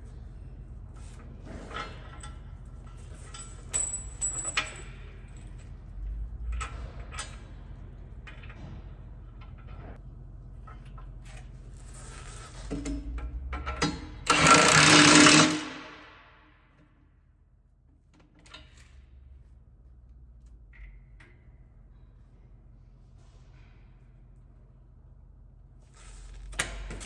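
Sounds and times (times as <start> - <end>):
metal tools clinking: 2.9 - 5.7.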